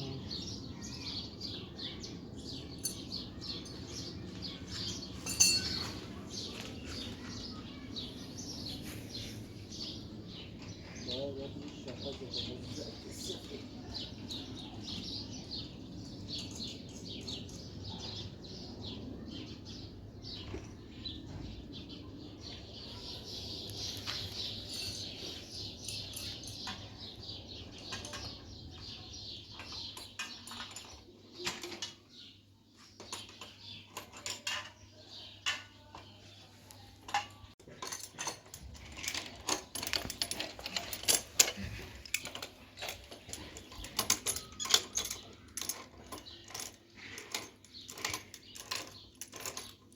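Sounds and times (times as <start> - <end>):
small metal objects clinking: 4.8 - 6.6, 37.0 - 49.9.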